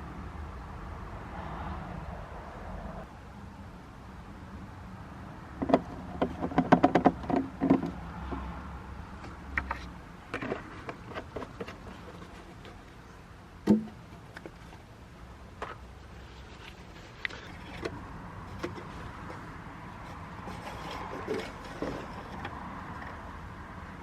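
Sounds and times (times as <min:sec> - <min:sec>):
plastic bottles knocking: 0:05.6 - 0:08.4, 0:09.6 - 0:12.9, 0:13.6 - 0:14.8, 0:17.2 - 0:23.2.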